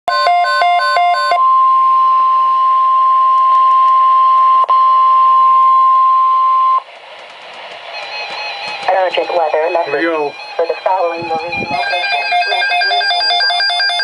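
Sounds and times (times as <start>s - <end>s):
steady warning alarm tone: 0.1s - 6.9s, 7.8s - 14.0s
buzzy data header tones: 7.9s - 14.0s.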